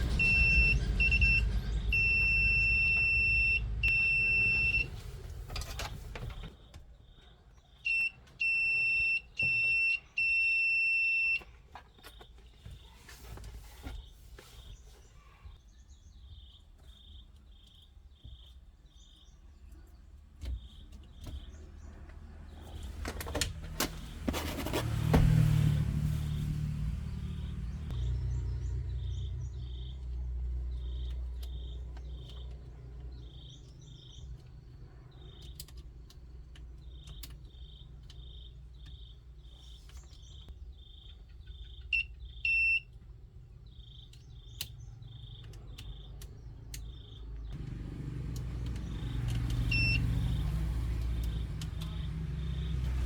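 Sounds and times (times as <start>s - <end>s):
low engine rumble: 0.0s - 6.4s, 19.7s - 35.5s, 43.0s - 53.0s.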